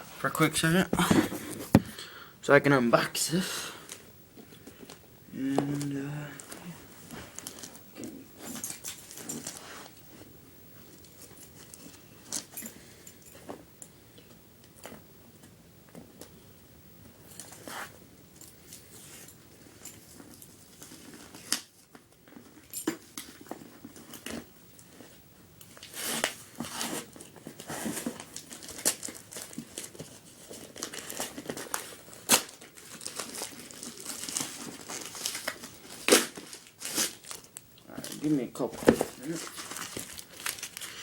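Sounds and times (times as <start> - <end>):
package crinkling and ripping: 25.8 - 41.0.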